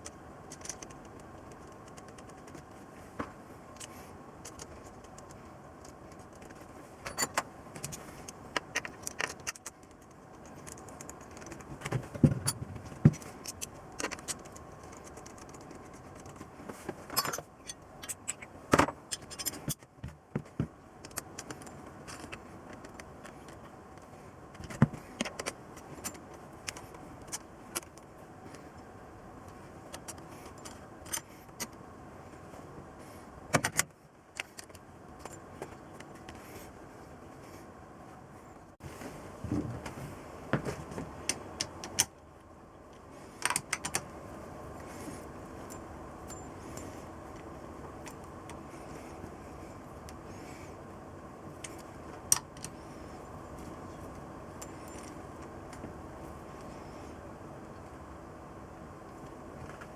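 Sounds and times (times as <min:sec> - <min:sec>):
faint steady hum: 0:00.0 - 0:59.9
metal tools clinking and scraping: 0:07.0 - 0:07.4, 0:17.1 - 0:18.5.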